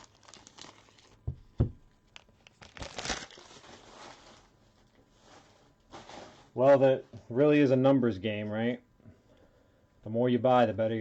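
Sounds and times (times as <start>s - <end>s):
packaging crinkling: 0.0s - 1.4s, 2.0s - 5.4s.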